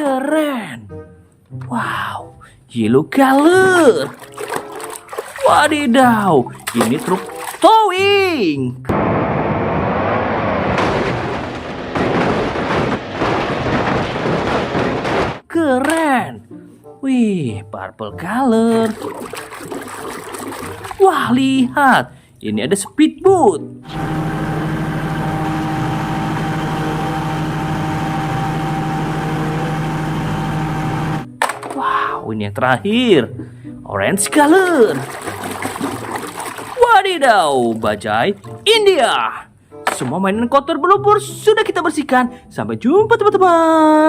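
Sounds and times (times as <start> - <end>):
water spray rushing: 18.8 - 21.0, 35.0 - 36.8
motor humming steadily: 23.9 - 31.2.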